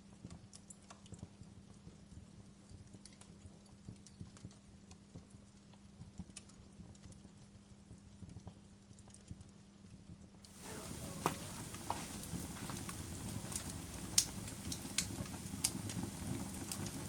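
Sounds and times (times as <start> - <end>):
campfire wood crackling: 10.5 - 17.0
faint steady hum: 10.6 - 17.0.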